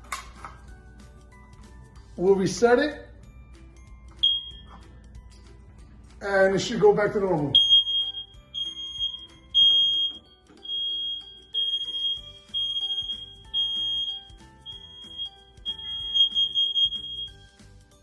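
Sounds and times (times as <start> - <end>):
soft background music: 0.0 - 18.0
smoke detector alarm beeping: 4.2 - 4.8, 7.5 - 17.5.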